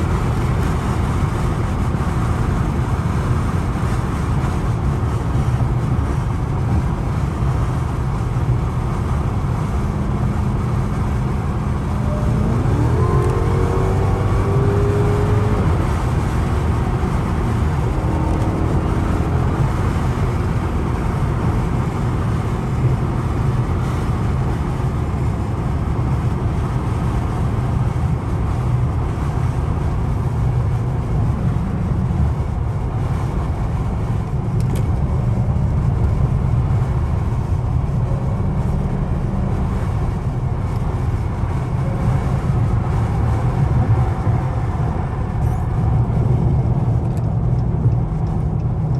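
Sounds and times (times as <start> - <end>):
car engine cruising: 0.0 - 48.9
road noise: 0.0 - 48.9.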